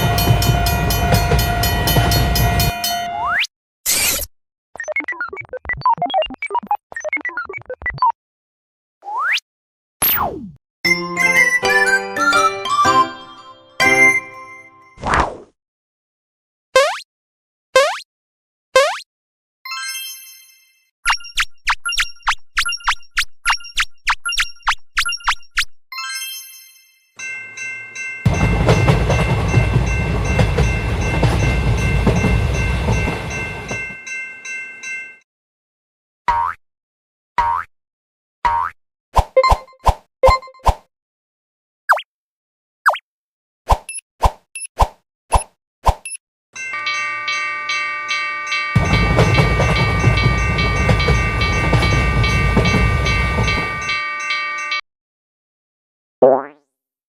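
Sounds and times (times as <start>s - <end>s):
train passing: 0.0s - 3.1s, 27.5s - 35.0s, 47.4s - 54.2s
level-crossing warning bell ringing: 0.0s - 3.2s, 10.9s - 14.8s, 27.2s - 35.2s, 46.6s - 54.8s
wheels clattering over rail joints: 28.3s - 34.0s, 48.8s - 53.9s.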